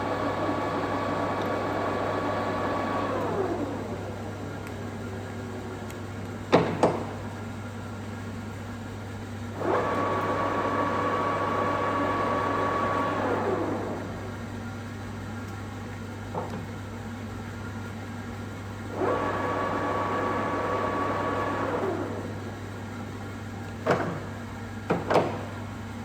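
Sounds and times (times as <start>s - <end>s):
lathe whining: 0.0s - 7.1s, 9.6s - 14.4s, 18.9s - 22.6s.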